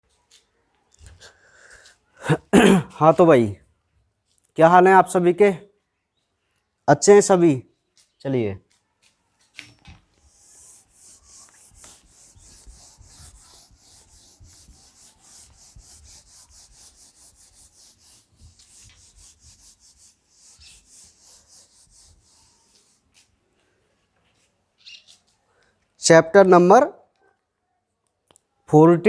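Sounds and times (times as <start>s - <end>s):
rhythmic scratching on a board: 10.2s - 23.0s.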